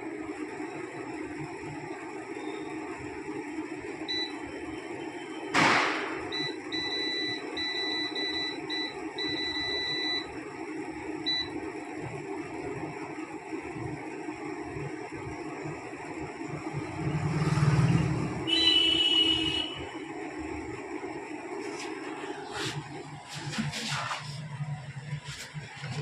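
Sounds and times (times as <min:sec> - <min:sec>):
steady low hum: 0:00.0 - 0:26.0
air fryer control panel beeps: 0:04.0 - 0:05.5, 0:06.2 - 0:10.4, 0:11.2 - 0:11.6, 0:18.5 - 0:19.8
sudden loud burst of noise: 0:05.5 - 0:06.3.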